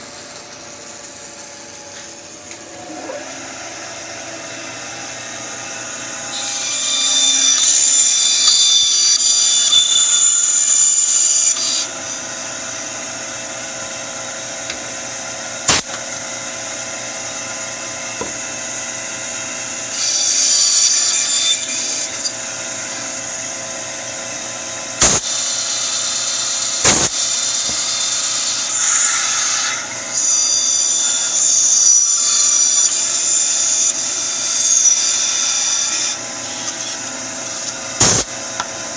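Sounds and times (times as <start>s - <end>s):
bandsaw cutting wood: 0.0s - 12.6s, 15.6s - 16.0s, 17.4s - 38.9s.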